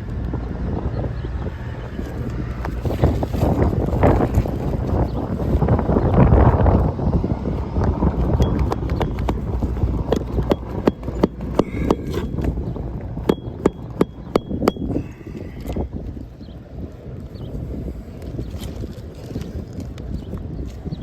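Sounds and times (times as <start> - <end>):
wind buffeting microphone: 0.0 - 21.0.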